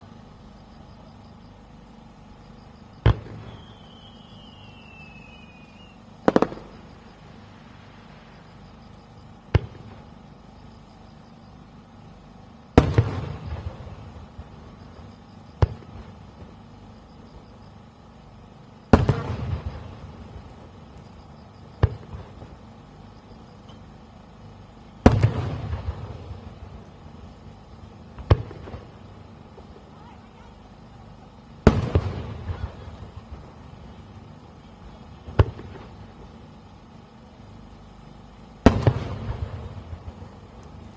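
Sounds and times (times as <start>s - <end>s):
falling firework whistle: 2.8s - 11.5s
firework shells bursting: 2.9s - 11.0s.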